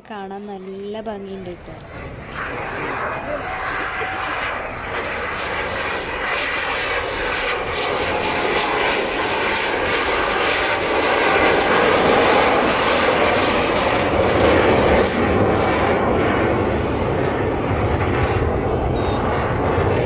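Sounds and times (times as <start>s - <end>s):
aircraft engine flying past: 0.0s - 20.0s.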